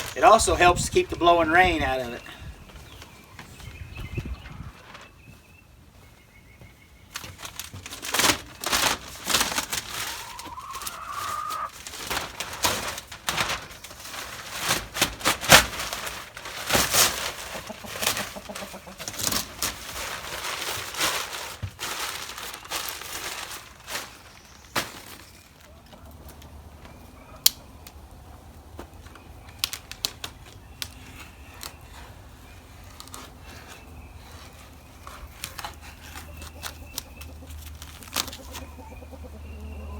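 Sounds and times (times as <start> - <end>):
plastic sheeting crinkling and tearing: 0.0 - 2.0, 7.2 - 26.4, 29.6 - 31.0, 37.6 - 38.6
chickens clucking: 8.3 - 39.9.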